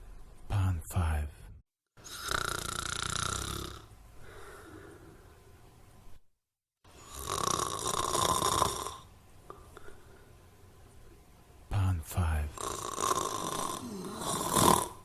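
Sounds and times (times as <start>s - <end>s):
person snoring: 2.0s - 5.2s, 6.9s - 9.9s, 12.5s - 15.0s
quiet breath: 4.1s - 5.7s, 9.4s - 11.3s.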